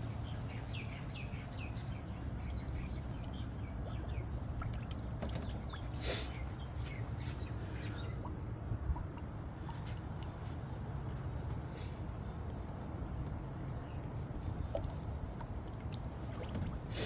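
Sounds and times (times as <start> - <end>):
small birds chirping: 0.0 - 12.8
steady low rumble: 0.0 - 17.0.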